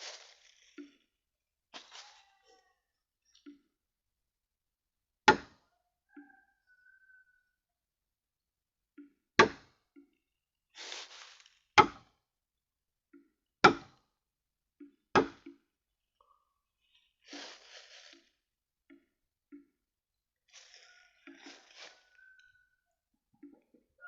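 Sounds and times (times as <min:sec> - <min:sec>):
soft rustling: 0:00.0 - 0:01.0, 0:01.8 - 0:02.6, 0:10.8 - 0:11.6, 0:16.8 - 0:18.3, 0:20.5 - 0:22.7
blade chopping bamboo: 0:09.4 - 0:09.7, 0:11.8 - 0:12.0, 0:13.7 - 0:14.0, 0:15.2 - 0:15.6.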